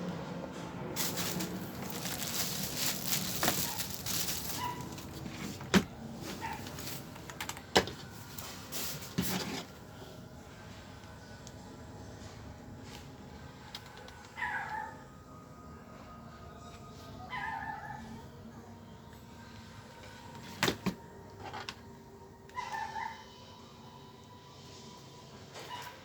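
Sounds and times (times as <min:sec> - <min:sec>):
rustling and handling noise: 0:00.9 - 0:10.0.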